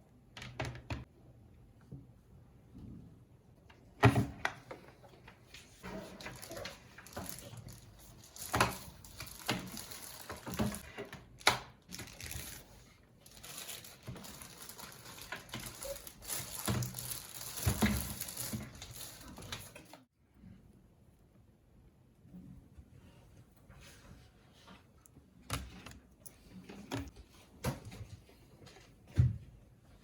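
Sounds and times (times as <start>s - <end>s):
packaging crinkling and rustling: 6.1s - 20.0s.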